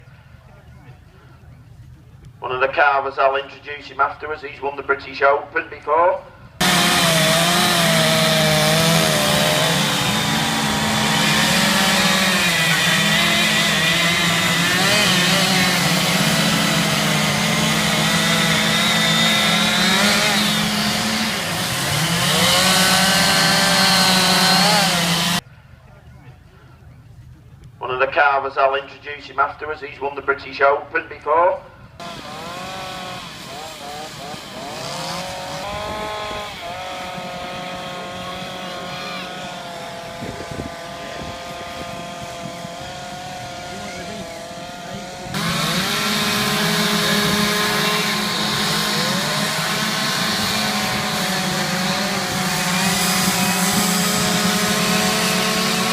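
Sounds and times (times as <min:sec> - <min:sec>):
chainsaw carving wood: 0:06.6 - 0:25.4, 0:32.0 - 0:55.9.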